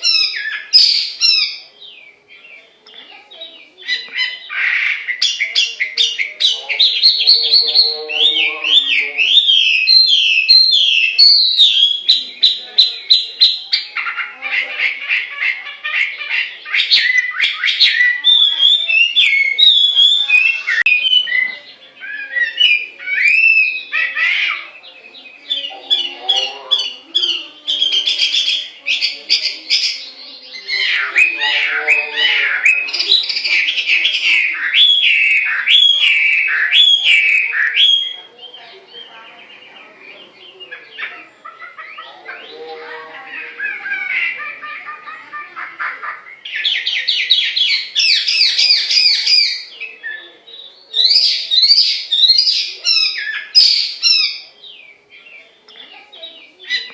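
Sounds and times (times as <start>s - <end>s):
bird whistled song: 5.1s - 13.9s, 16.8s - 23.9s, 31.0s - 38.6s, 46.3s - 55.4s.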